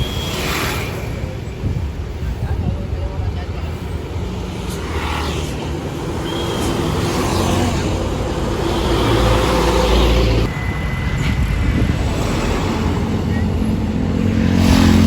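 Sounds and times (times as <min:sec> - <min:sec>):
bus engine rumbling: 0:00.0 - 0:15.0
thin high tone: 0:10.5 - 0:12.5.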